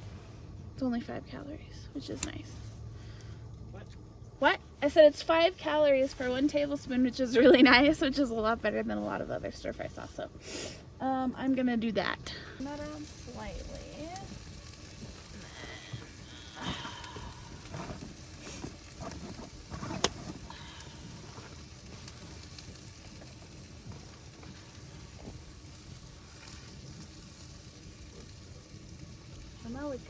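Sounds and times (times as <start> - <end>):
chicken sizzling in pan: 12.6 - 30.0.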